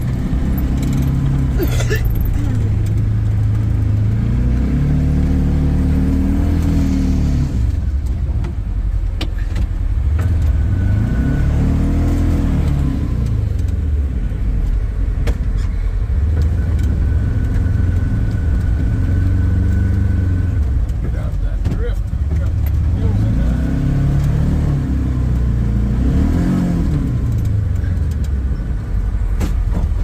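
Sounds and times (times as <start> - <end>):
knocks and clatter: 14.5 - 20.0, 29.2 - 30.0.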